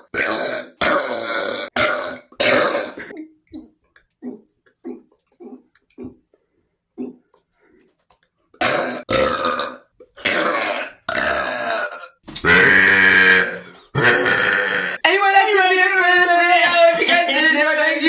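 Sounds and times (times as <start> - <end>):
person burping loudly: 0.0 - 6.2, 8.6 - 15.1.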